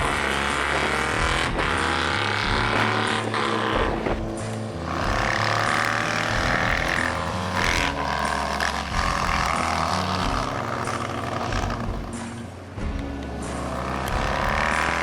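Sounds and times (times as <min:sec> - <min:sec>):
motorcycle engines running: 0:00.0 - 0:15.0.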